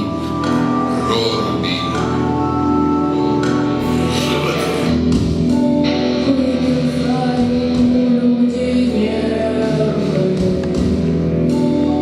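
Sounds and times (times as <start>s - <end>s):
song accompaniment: 0.0s - 12.0s
person singing: 5.9s - 12.0s.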